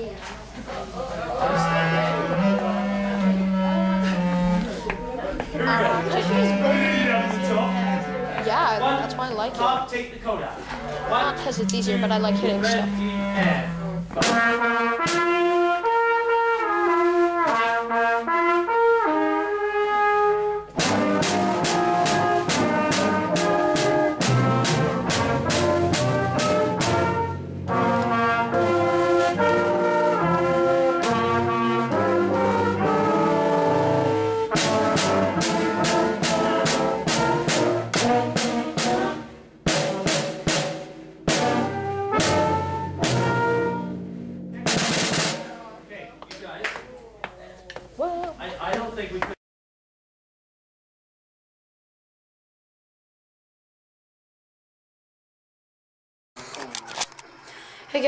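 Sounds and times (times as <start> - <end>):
percussion strikes: 1.4 - 9.8, 10.7 - 15.8, 20.7 - 45.7
brass band music: 1.4 - 45.8.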